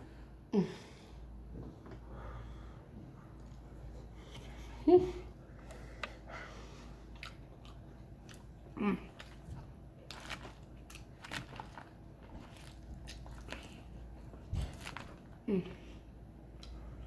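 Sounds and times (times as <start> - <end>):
person chewing food: 5.5 - 17.0.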